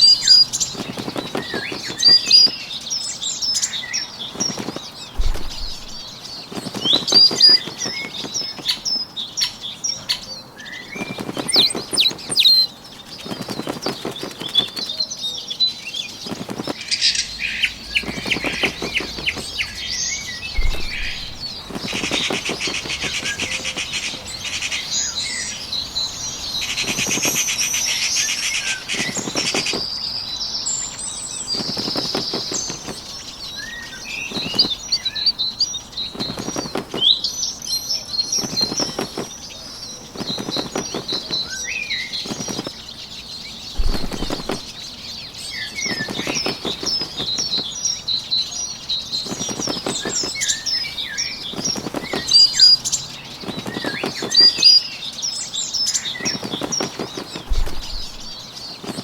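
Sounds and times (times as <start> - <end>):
bird wings flapping: 0.0 - 2.8, 3.4 - 9.5, 10.1 - 15.2, 15.9 - 30.1, 31.0 - 37.4, 38.1 - 48.2, 49.1 - 59.0
songbirds chirping: 0.0 - 59.0.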